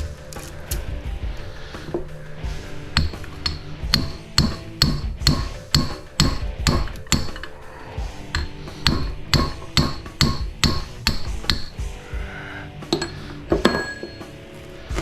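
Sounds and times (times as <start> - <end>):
hammer blows on metal: 8.3 - 12.0.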